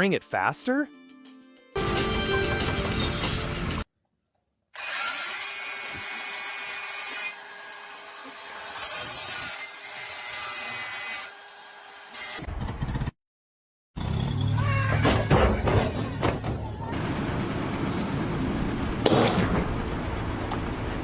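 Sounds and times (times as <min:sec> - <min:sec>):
power tool motor running: 0:04.8 - 0:12.4.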